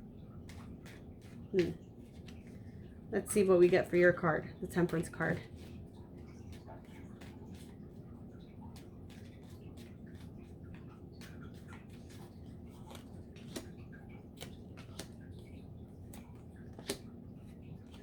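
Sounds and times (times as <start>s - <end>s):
steady low hum: 0.0s - 18.0s
cards shuffling clicks and snaps: 13.0s - 15.3s, 16.1s - 17.1s.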